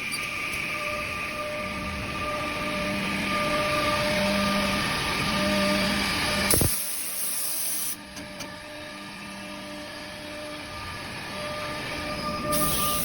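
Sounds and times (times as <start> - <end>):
woodworking machinery humming: 0.3 - 6.6.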